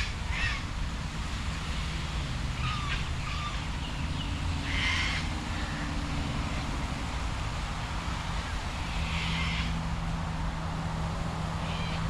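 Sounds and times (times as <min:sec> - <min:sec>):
birds calling: 0:02.5 - 0:06.7, 0:08.4 - 0:09.8, 0:11.6 - 0:12.0.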